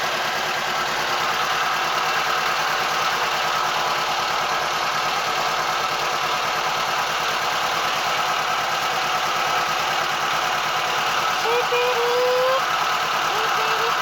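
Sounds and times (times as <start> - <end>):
boat engine throbbing: 6.5 - 14.0.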